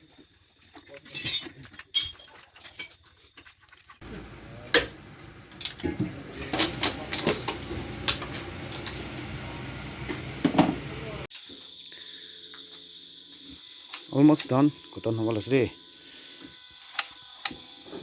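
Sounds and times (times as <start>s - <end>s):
metal tools clinking and knocking: 1.0s - 3.0s
low mechanical hum: 4.0s - 18.0s.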